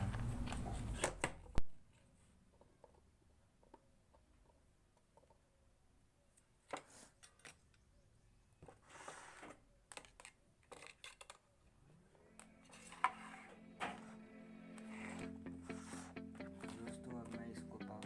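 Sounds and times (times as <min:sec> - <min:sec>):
wires and circuit board handling: 0:09.5 - 0:14.2.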